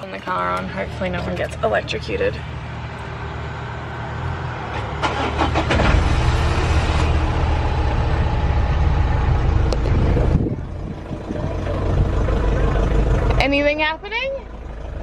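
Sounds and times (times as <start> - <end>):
diesel engine running: 0.0 - 15.0
diesel engine starter cranking: 4.6 - 15.0.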